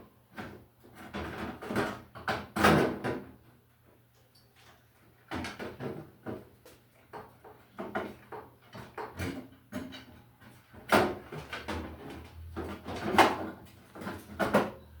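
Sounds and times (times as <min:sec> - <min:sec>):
small knocks and scrapes: 0:04.6 - 0:14.9.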